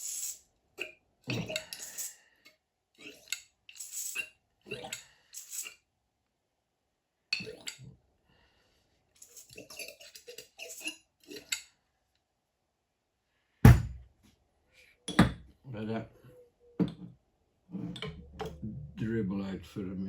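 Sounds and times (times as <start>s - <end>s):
heavy thud of object set down: 13.7s - 14.0s.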